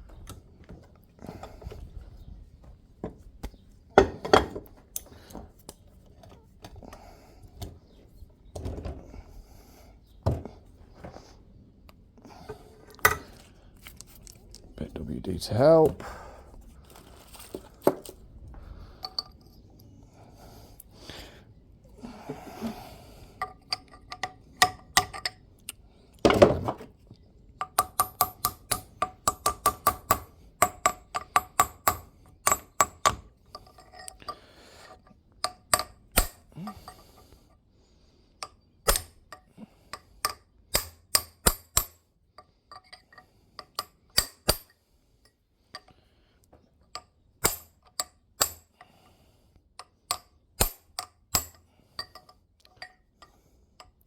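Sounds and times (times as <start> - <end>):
hammer tapping on metal: 27.6 - 33.2.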